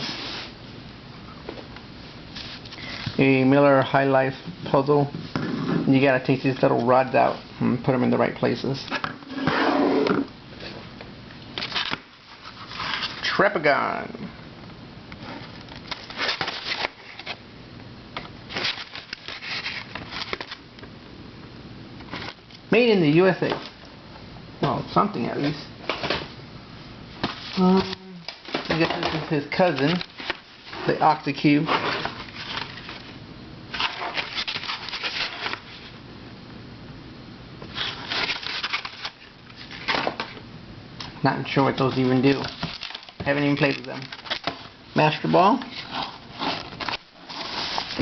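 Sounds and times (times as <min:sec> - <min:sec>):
puzzle boxes rustling and clicking: 0:27.2 - 0:33.1.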